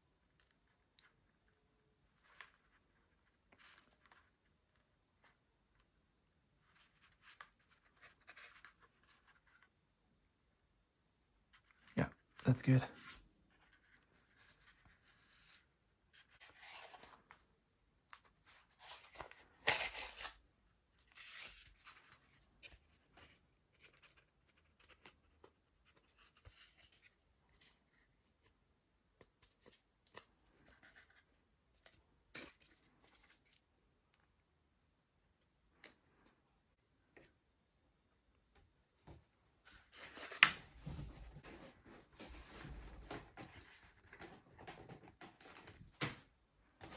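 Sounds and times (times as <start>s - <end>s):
rustles and scrapes of parts: 12.9s - 17.5s, 21.0s - 25.1s, 29.4s - 33.6s, 39.6s - 46.2s.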